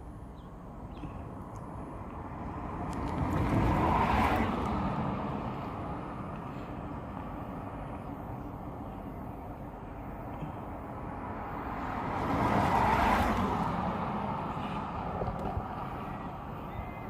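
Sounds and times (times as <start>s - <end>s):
outdoor background noise: 0.0s - 17.0s
vehicle passing by: 2.2s - 9.4s, 10.8s - 17.0s.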